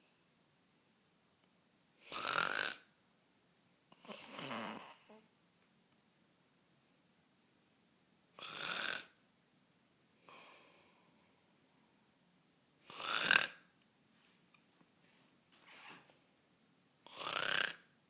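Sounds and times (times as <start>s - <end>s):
person snoring: 2.1s - 2.8s, 4.0s - 5.2s, 8.4s - 9.2s, 12.9s - 13.6s, 17.1s - 17.9s
soft breaths: 10.2s - 12.1s.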